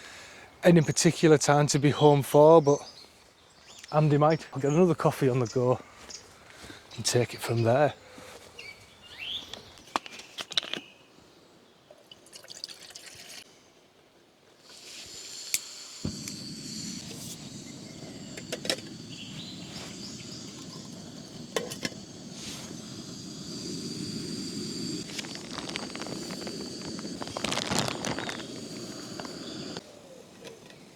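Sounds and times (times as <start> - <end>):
gas stove burner hissing: 14.7 - 29.8.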